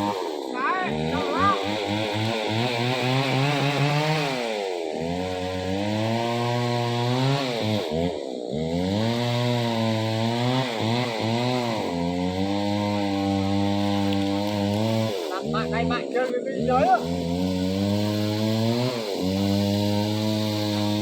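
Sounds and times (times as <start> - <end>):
chainsaw engine running: 0.0 - 21.0.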